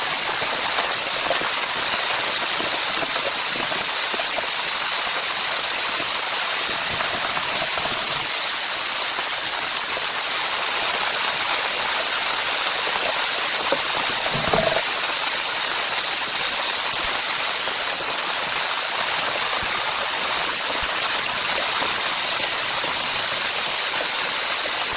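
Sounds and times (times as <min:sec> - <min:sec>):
heavy rain: 0:00.0 - 0:24.9
dull knock: 0:14.3 - 0:14.8.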